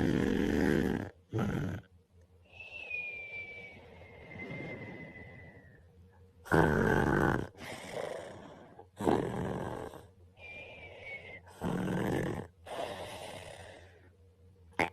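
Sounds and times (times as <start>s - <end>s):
man snoring: 0.0s - 1.9s, 6.4s - 10.1s, 11.5s - 13.9s
breathy exhale with whistle: 2.5s - 5.8s, 10.4s - 11.5s.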